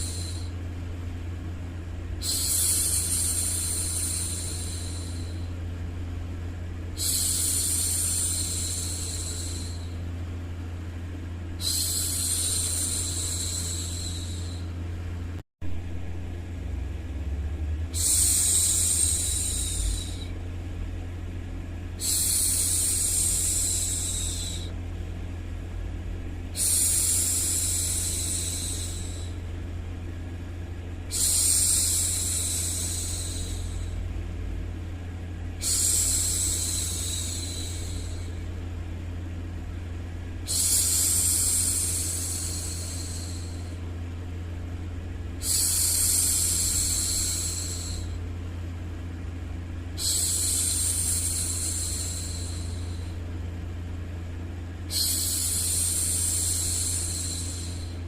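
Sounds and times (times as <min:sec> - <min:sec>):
low white noise rumble: 0:00.0 - 0:58.0
woman shushing: 0:11.6 - 0:14.7, 0:18.0 - 0:20.4, 0:22.0 - 0:24.8, 0:31.1 - 0:34.0, 0:35.6 - 0:38.3, 0:50.0 - 0:53.2, 0:54.9 - 0:58.0.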